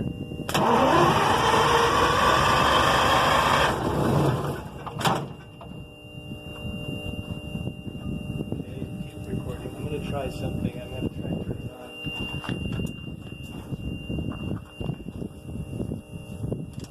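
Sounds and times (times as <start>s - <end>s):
diesel engine cranking: 0.5s - 5.6s.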